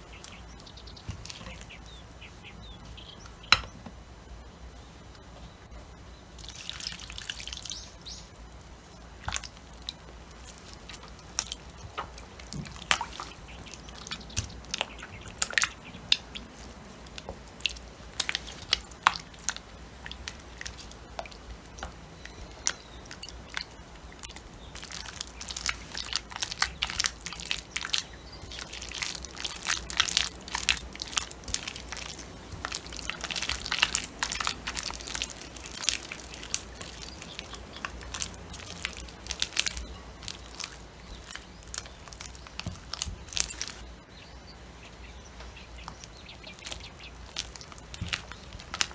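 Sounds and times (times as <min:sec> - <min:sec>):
sticky dough stirred in a bowl: 0:00.0 - 0:04.0, 0:06.4 - 0:43.9, 0:45.0 - 0:48.9.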